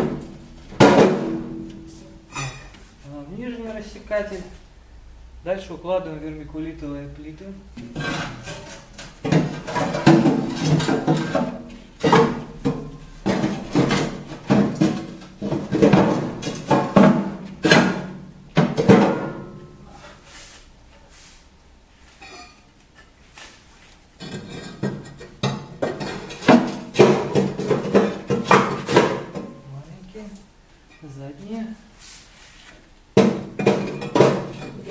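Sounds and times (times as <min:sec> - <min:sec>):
panels knocking against metal: 0:00.0 - 0:02.7, 0:07.8 - 0:19.9, 0:24.2 - 0:29.7, 0:33.2 - 0:34.9.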